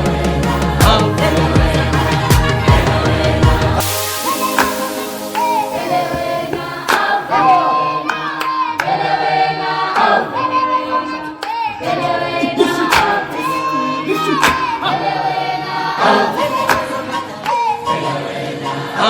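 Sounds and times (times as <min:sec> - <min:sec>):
choir singing gospel song: 0:00.0 - 0:19.0
sharp percussion hits: 0:00.8 - 0:07.7.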